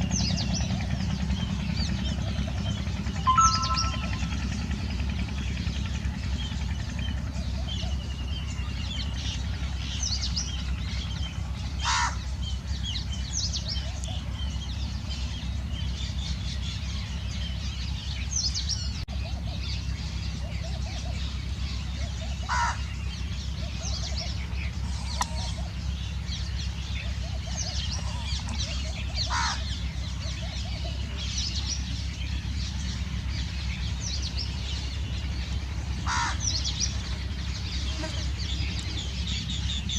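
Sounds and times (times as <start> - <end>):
sparrows chirping: 0.0 - 39.9.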